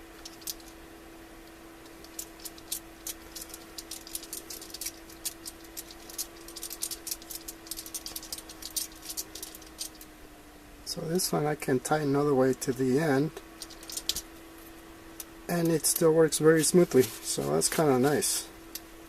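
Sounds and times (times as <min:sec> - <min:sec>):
steady low hum: 0:00.0 - 0:19.0
ratchet clicking: 0:01.8 - 0:10.1, 0:13.6 - 0:14.2.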